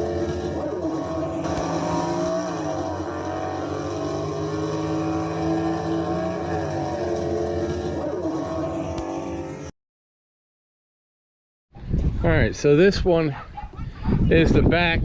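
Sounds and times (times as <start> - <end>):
vehicle engine running: 0.0 - 9.7.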